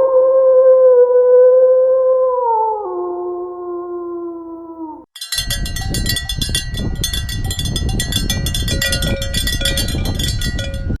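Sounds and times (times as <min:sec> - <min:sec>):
small metal bells jingling: 0:05.2 - 0:11.0.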